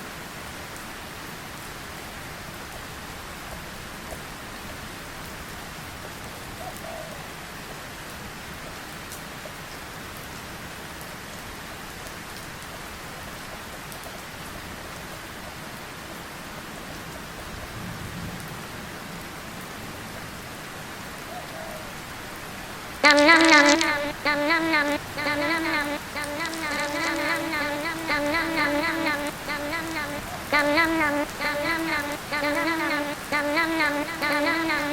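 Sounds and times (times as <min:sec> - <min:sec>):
steady rain hiss: 0:00.0 - 0:34.9
loud wavering buzz: 0:23.0 - 0:34.9.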